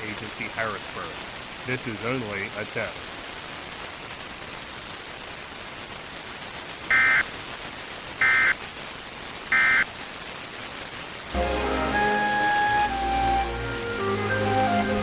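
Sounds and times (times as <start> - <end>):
steady hiss: 0.0 - 15.0
warbling digital data tones: 6.9 - 7.2, 8.2 - 8.6.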